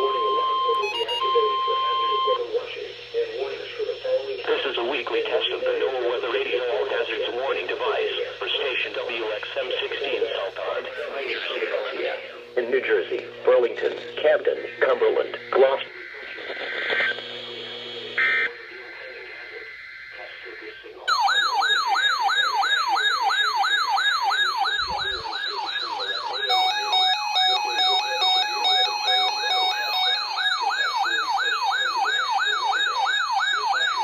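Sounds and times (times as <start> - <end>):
warbling electronic siren: 0.0 - 7.2, 14.7 - 34.0
faint radio voices: 0.0 - 34.0.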